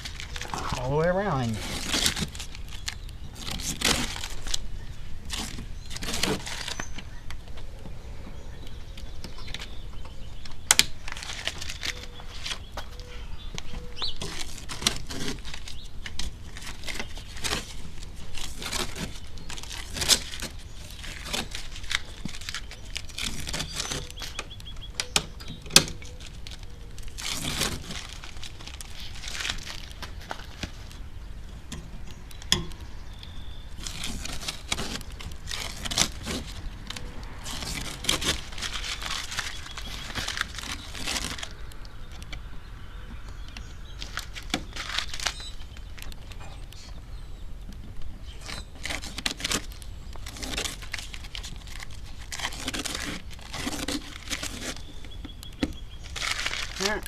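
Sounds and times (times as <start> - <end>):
tape peeling and crumpling: 0.0 - 7.9, 8.9 - 57.0.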